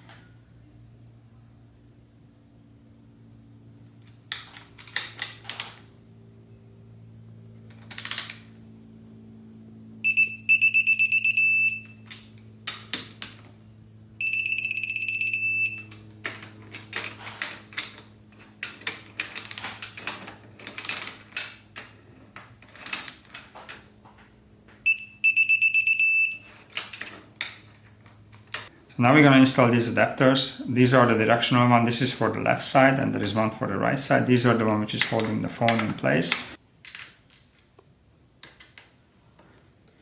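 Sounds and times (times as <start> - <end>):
torque wrench beeping: 10.0 - 12.2, 14.2 - 16.0, 24.8 - 26.6.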